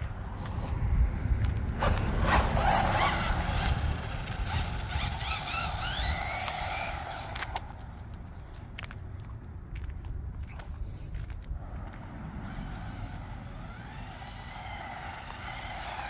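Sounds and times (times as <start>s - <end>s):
electric motor whining: 1.8s - 8.0s, 11.6s - 16.0s.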